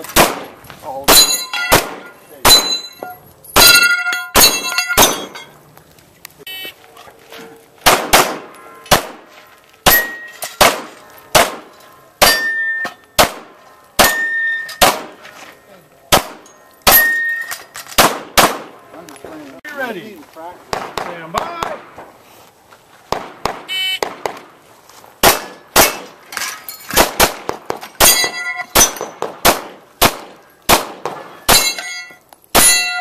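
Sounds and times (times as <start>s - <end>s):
pistol shots: 0.0s - 2.9s, 3.6s - 5.3s, 7.8s - 15.2s, 16.1s - 18.8s, 20.7s - 22.0s, 23.1s - 24.5s, 25.2s - 26.2s, 26.9s - 33.0s
steel targets clanging: 1.0s - 5.6s, 9.8s - 13.1s, 14.0s - 15.6s, 16.3s - 18.0s, 25.3s - 27.0s, 28.0s - 29.2s, 31.4s - 33.0s.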